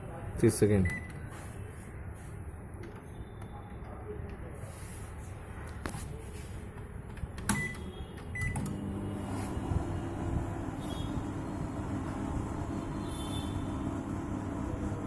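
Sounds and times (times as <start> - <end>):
microwave keypad beeps: 0.8 - 1.2, 7.5 - 8.7
microwave oven humming: 8.4 - 15.0.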